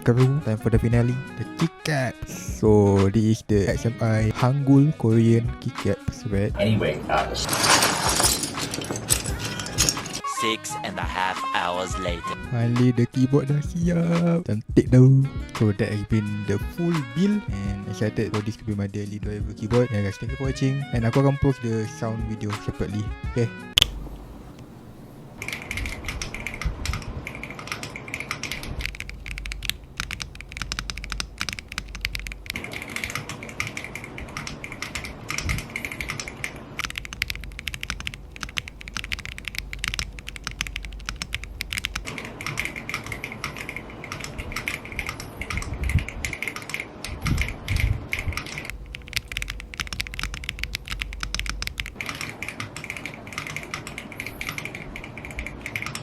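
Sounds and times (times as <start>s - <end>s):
keyboard typing clicks: 25.4s - 45.6s, 47.4s - 56.0s.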